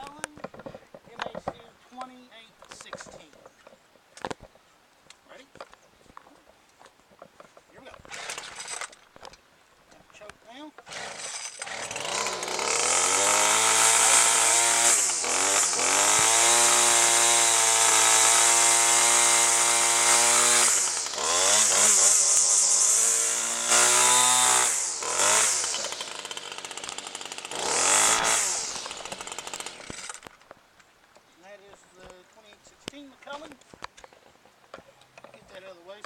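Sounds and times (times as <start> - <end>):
string trimmer engine revving: 8.1 - 8.9, 10.8 - 30.3.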